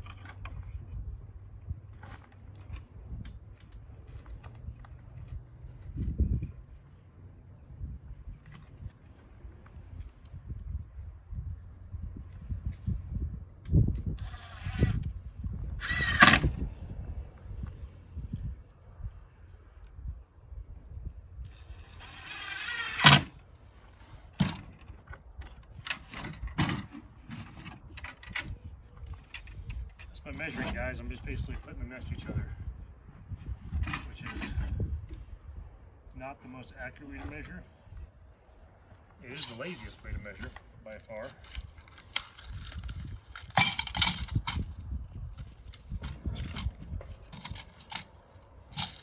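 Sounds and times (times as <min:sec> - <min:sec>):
metal hinge scraping: 0:21.7 - 0:23.3
handling noise: 0:39.2 - 0:49.0
metal hardware clinking: 0:39.3 - 0:40.0, 0:41.3 - 0:44.8, 0:46.0 - 0:49.0.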